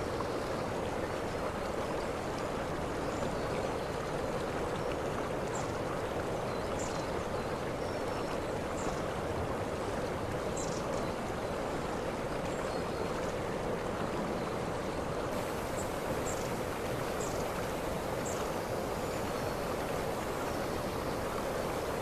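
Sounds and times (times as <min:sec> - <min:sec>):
waterfall rushing: 0:15.3 - 0:22.0.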